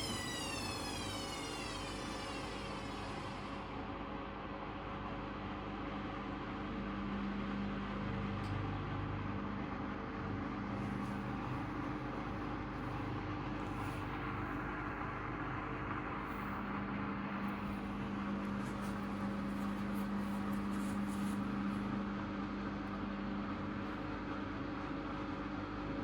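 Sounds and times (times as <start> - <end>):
washing machine humming: 0.0 - 21.7.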